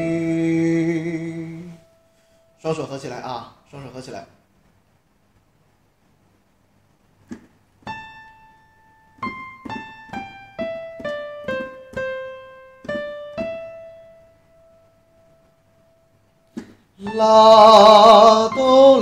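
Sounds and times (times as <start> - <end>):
piano melody: 0.0 - 2.6, 7.8 - 19.0.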